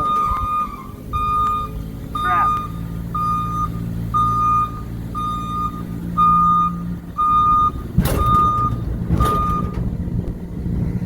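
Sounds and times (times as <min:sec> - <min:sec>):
motion alarm beeping: 0:00.0 - 0:09.8
engine running: 0:00.0 - 0:11.0.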